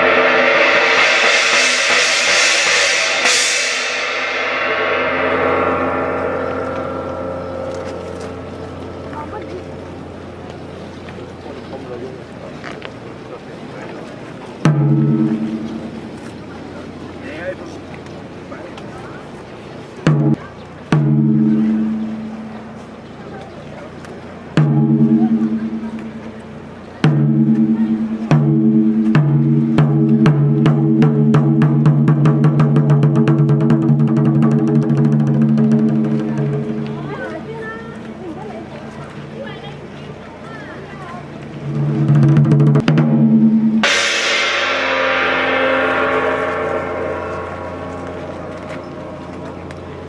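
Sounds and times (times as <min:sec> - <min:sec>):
gong struck and ringing: 0:00.0 - 0:10.1, 0:42.8 - 0:50.0
taiko drum beats: 0:00.0 - 0:10.5, 0:14.6 - 0:17.4, 0:20.0 - 0:23.0, 0:24.3 - 0:39.4, 0:41.5 - 0:50.0
low sustained pitched tone: 0:04.1 - 0:11.0, 0:42.9 - 0:50.0.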